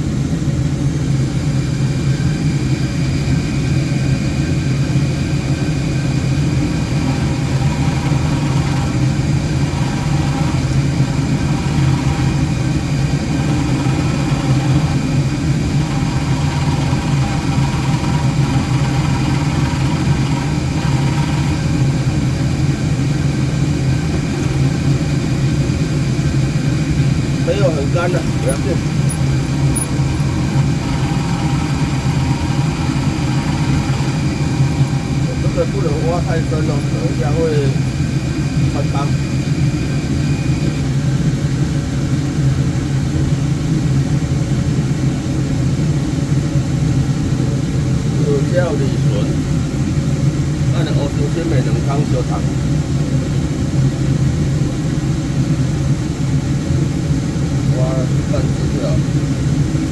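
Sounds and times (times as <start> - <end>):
wood lathe motor hum: 6.6 - 23.0, 24.1 - 25.2, 27.4 - 35.6.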